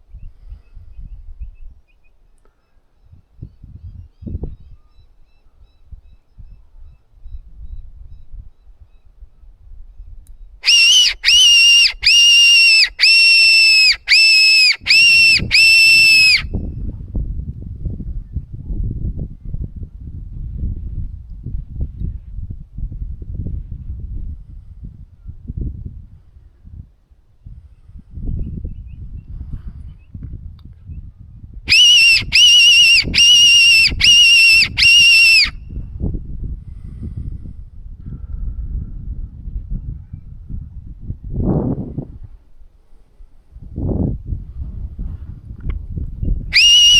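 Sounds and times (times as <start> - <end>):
predator whistle squeals: 10.6 - 16.5, 31.7 - 35.6, 46.5 - 46.9.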